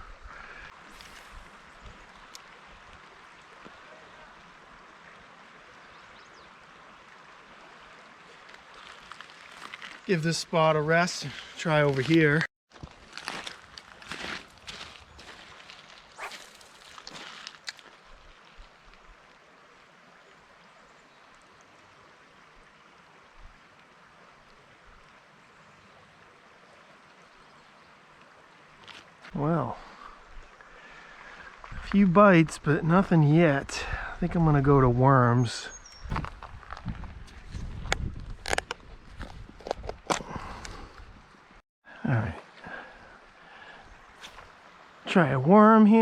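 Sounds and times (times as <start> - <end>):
rustles: 0.0 - 3.0, 8.3 - 10.2, 11.1 - 19.1, 44.0 - 44.6
brook water flowing over rocks: 0.0 - 46.0.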